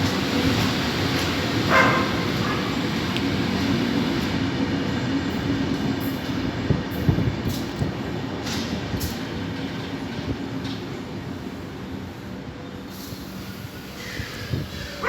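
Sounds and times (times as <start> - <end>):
train wheels rumbling on rails: 0.0 - 15.0
high-pitched wheel hisses: 12.9 - 15.0.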